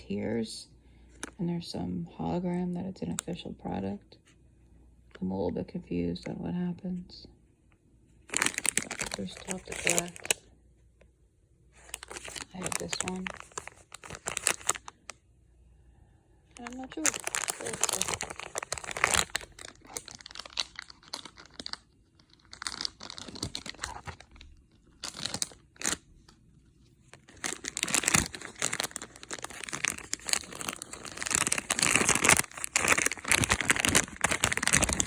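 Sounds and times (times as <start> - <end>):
plastic packaging crinkling: 8.2 - 10.5, 11.8 - 15.2, 16.6 - 35.0
plastic packaging tearing: 8.3 - 10.4, 11.8 - 15.1, 16.6 - 26.1, 27.1 - 35.0.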